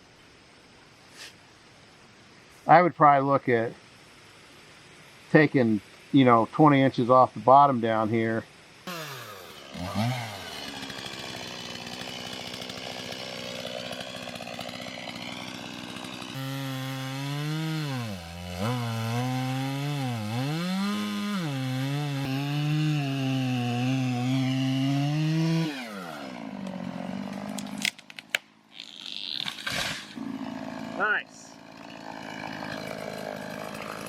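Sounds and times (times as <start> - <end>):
chainsaw cutting wood: 8.9 - 34.0
wood cracking: 9.7 - 22.0, 23.6 - 30.9, 31.7 - 34.0.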